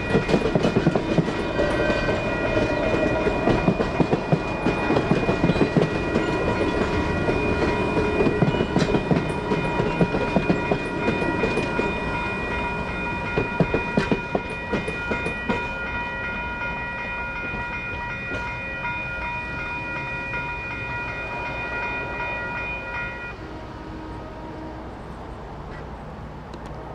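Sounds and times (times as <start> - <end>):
train wheels clacking over rail joints: 0.0 - 12.2, 12.8 - 15.9
crossing bells ringing: 0.0 - 25.1.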